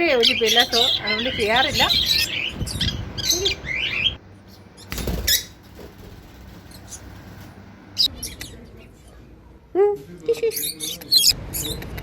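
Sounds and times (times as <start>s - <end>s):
birds chirping: 0.0s - 9.3s.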